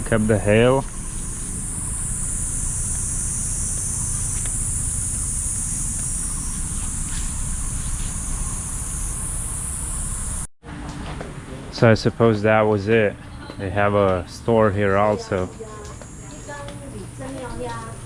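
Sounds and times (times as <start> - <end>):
high-pitched insect chorus: 0.0 - 10.5
low rumble: 0.0 - 10.5.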